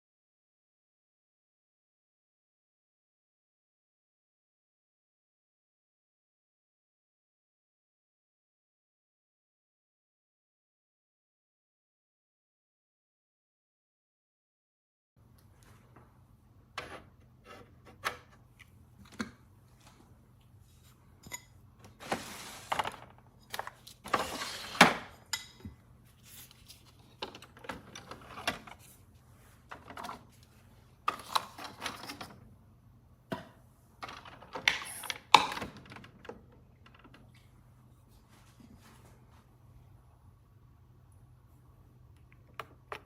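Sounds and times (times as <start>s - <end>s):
scraping and rustling: 21.9s - 24.8s.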